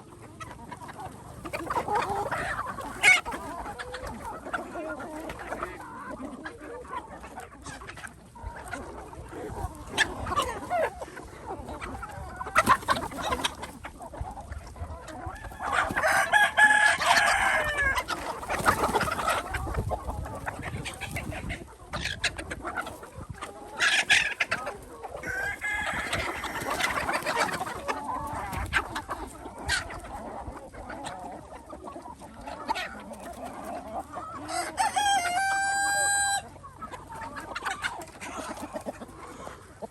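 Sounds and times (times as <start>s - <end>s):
chickens clucking: 0.0s - 39.9s
rooster crowing: 15.6s - 18.0s, 25.2s - 26.9s, 34.5s - 36.4s.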